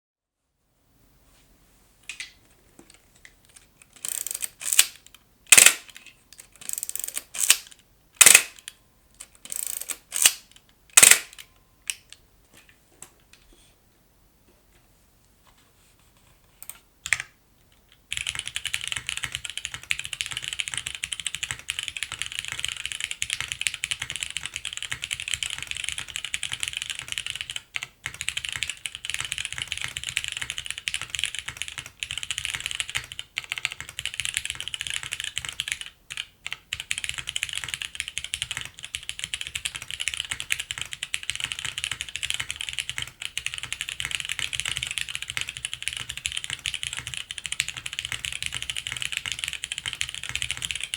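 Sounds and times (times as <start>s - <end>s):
mechanical keyboard typing: 3.8s - 11.4s, 18.0s - 50.9s.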